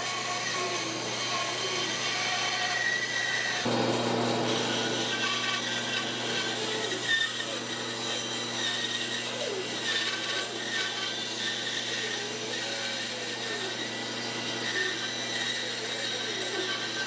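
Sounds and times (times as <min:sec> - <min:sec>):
power tool working wood: 0:00.0 - 0:17.0.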